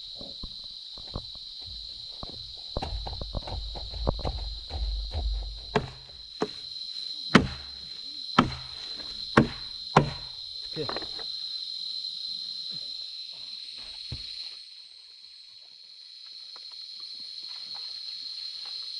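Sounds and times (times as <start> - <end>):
high insect chorus: 0.0 - 18.9
sharp knocks: 1.0 - 6.6, 7.4 - 7.8, 8.4 - 10.4
soft scuffing: 1.0 - 6.7.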